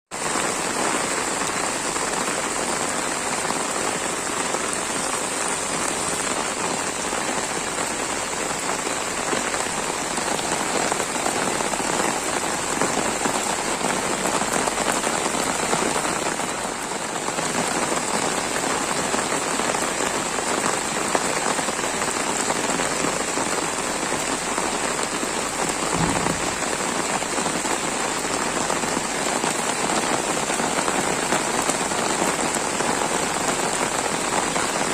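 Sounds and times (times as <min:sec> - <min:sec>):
rain pattering: 0:00.1 - 0:34.9.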